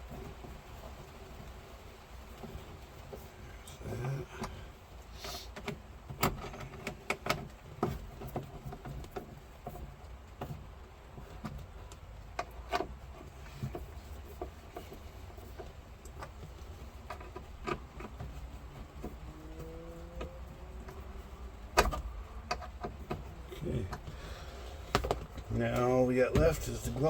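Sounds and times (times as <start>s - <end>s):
light clicks and taps: 0.0s - 27.0s
steady low hum: 13.1s - 27.0s.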